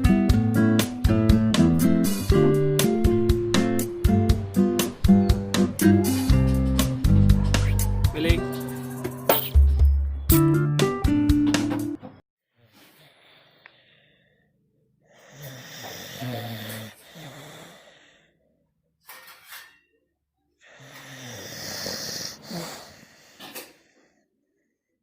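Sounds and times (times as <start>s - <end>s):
dog snoring: 15.2s - 18.1s, 20.6s - 23.8s.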